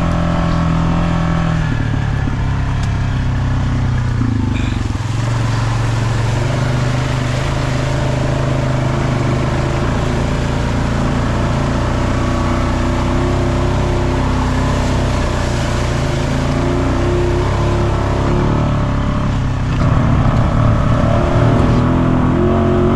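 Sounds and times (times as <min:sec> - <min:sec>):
off-road vehicle engine running: 0:00.0 - 0:22.9.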